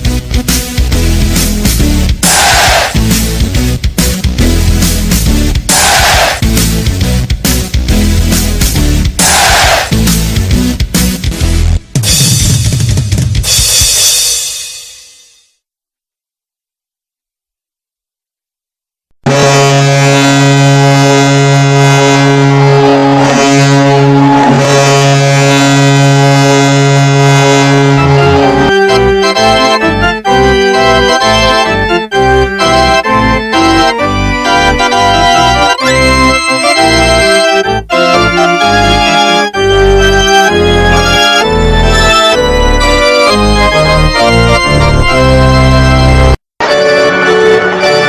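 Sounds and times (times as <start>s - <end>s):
loud music with a beat: 0.0s - 13.5s
goal horn blast: 19.2s - 30.1s.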